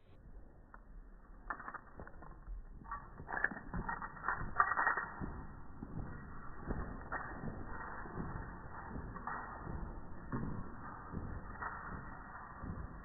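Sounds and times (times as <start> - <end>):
slowed dog head shake rattling: 1.2 - 13.0.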